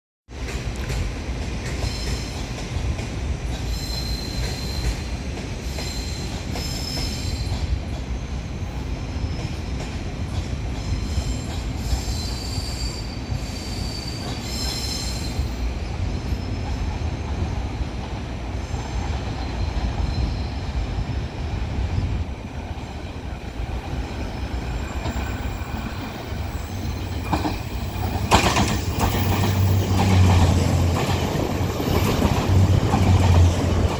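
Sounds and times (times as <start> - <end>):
train clatter: 0.3 - 8.2, 22.6 - 33.9
diesel train engine rumble: 7.2 - 33.9
high-pitched wheel squeals: 10.9 - 16.6.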